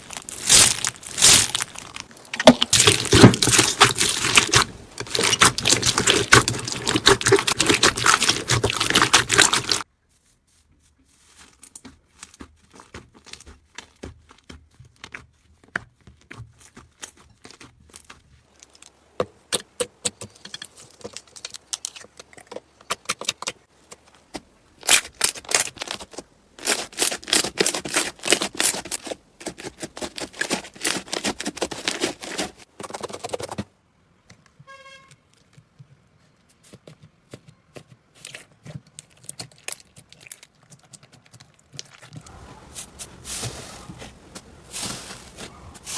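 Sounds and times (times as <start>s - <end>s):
slime squishing and crackling: 0.0s - 9.9s, 16.7s - 33.4s, 38.2s - 45.9s.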